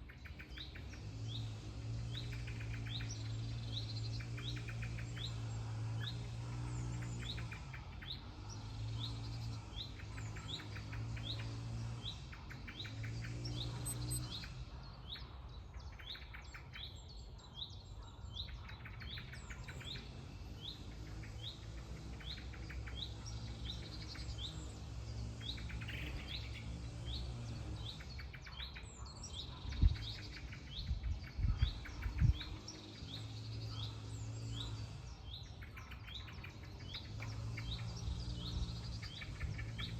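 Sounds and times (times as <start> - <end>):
songbird high rising chirp: 0.0 - 39.9
bird trills: 12.6 - 14.6.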